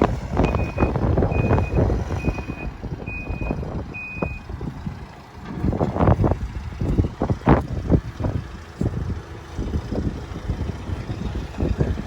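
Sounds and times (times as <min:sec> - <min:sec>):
clunks: 0:00.0 - 0:09.0
reversing alarm beeping: 0:00.4 - 0:04.5.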